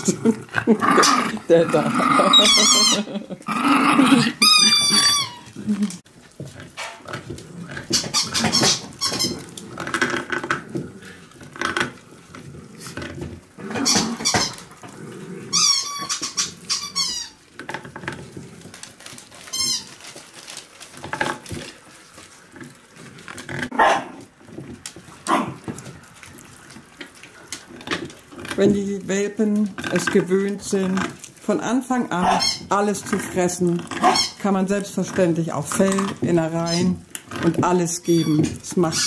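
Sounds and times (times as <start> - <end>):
low animal noises: 0.0 - 39.0
puppy squealing: 2.2 - 6.0, 8.0 - 9.6, 13.8 - 14.7, 15.5 - 17.5, 32.2 - 32.7, 34.0 - 34.4.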